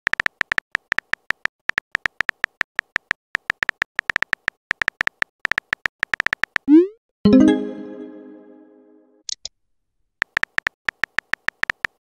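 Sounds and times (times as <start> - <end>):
keyboard typing clicks: 10.2 - 12.0.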